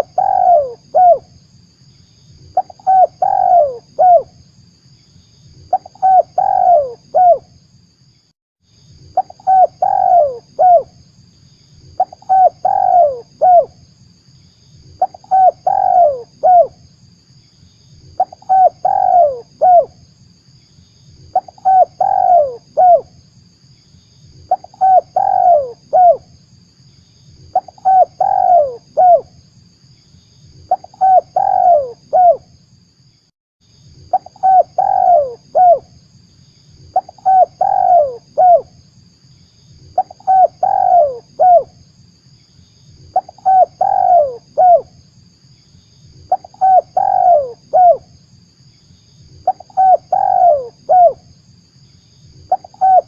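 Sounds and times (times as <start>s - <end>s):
dove cooing: 0.0s - 1.2s, 2.6s - 4.3s, 5.7s - 7.5s, 9.2s - 10.9s, 12.0s - 13.7s, 15.0s - 16.8s, 18.2s - 20.0s, 21.3s - 23.1s, 24.5s - 26.2s, 27.5s - 29.3s, 30.7s - 32.4s, 34.1s - 35.9s, 36.9s - 38.7s, 40.0s - 41.7s, 43.1s - 45.0s, 46.3s - 48.1s, 49.4s - 51.2s, 52.5s - 53.0s.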